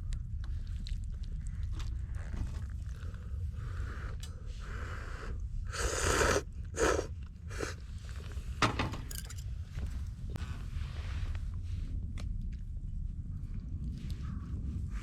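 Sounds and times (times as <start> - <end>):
steady low rumble: 0.0 - 15.0
person slurping noodles: 5.7 - 7.8.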